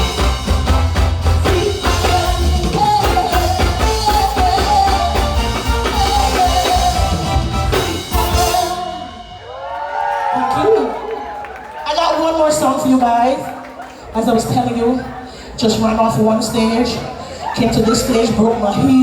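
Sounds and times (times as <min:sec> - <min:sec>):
live soca music with drum beat: 0:00.0 - 0:10.8.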